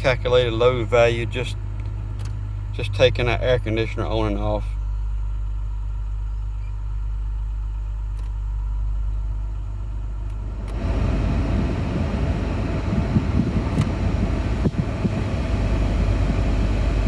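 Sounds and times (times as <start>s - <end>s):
car engine idling: 0.0s - 17.0s
air conditioning blower rushing: 9.6s - 17.0s.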